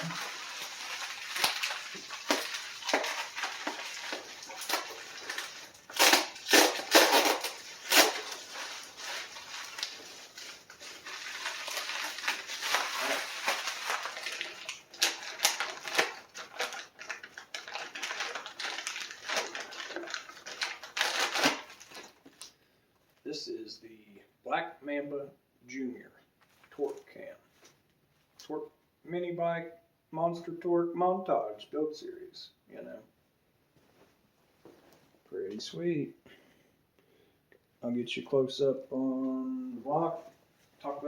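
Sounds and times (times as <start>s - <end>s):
packaging rustling: 0.0s - 22.5s.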